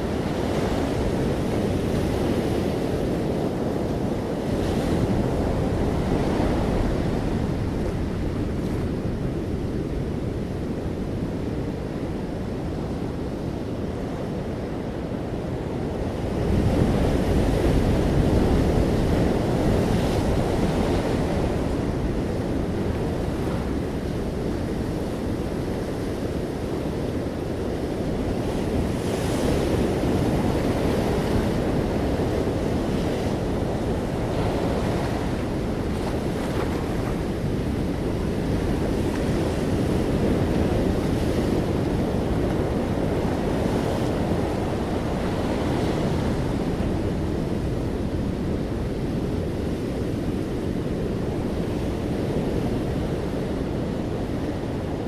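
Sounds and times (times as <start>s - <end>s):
waves breaking on shore: 0.0s - 55.0s.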